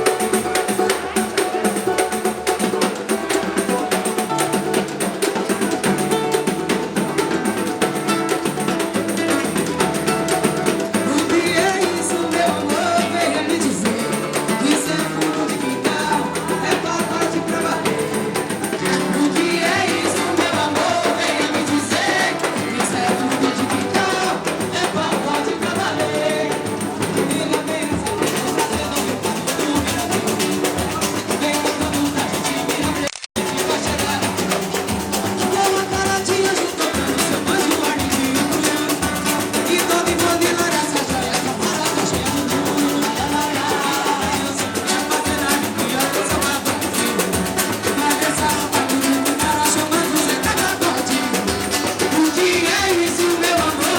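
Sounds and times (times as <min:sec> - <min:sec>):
samba band playing: 0:00.0 - 0:53.9
person singing: 0:07.6 - 0:53.9.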